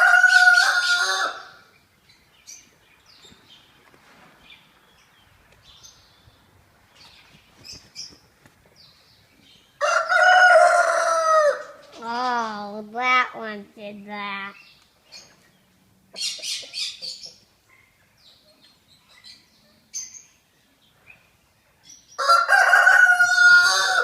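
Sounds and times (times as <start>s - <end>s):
rooster crowing: 0.0s - 1.6s, 9.8s - 11.8s, 22.2s - 24.0s.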